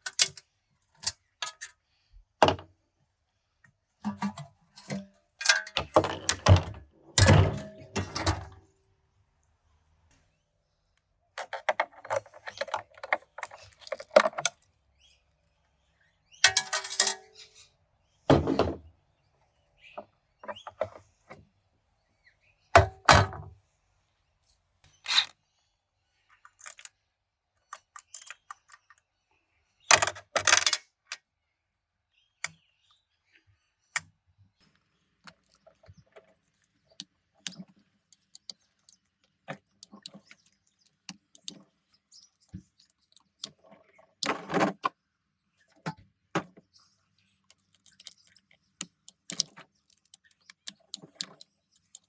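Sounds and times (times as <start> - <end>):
metal parts and tools clanking: 4.1 - 8.5, 35.3 - 44.9, 47.5 - 52.0.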